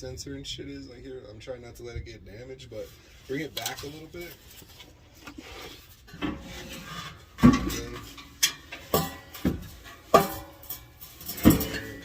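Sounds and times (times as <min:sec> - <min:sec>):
exhaust pipe clanking on metal: 0:06.1 - 0:12.0.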